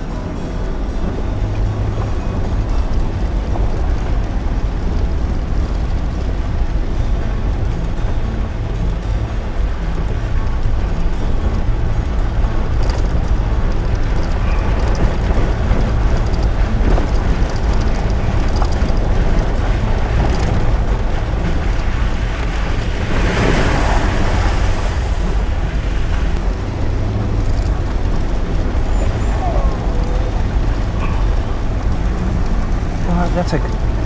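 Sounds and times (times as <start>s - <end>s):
low rumble of engine and tyres: 0.0s - 34.0s
wind buffeting microphone: 0.0s - 34.0s
loud rushing: 19.7s - 34.0s.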